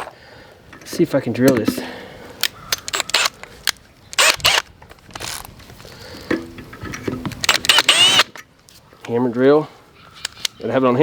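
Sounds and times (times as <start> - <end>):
drill handling clicks and rattles: 2.7 - 5.5, 6.7 - 8.5
cordless drill motor whining: 4.1 - 5.5, 7.5 - 8.3.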